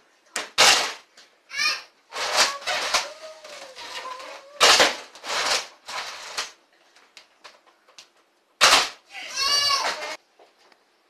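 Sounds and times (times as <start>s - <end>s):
toy blaster firing darts: 0.4s - 1.0s, 4.6s - 5.7s, 8.6s - 9.0s.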